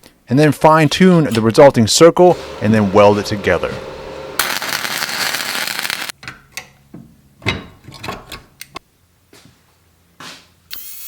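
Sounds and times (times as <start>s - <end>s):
welding arc crackling: 4.4s - 6.1s.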